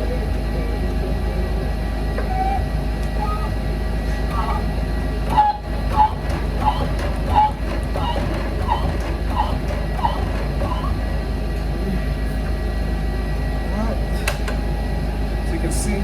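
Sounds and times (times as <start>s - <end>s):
steady low hum: 0.0s - 16.0s
wheel bearing squeaking: 2.2s - 11.1s.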